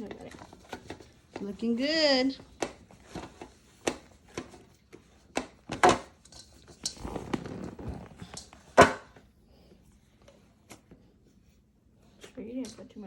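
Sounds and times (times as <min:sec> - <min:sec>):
dough rubbing: 0:00.0 - 0:08.8
hands kneading dough in bowl: 0:00.0 - 0:13.0.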